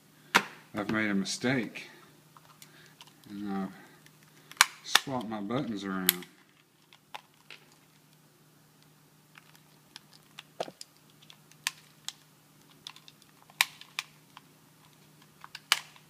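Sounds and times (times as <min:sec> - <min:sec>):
plastic controller parts clicking: 0:09.4 - 0:16.0.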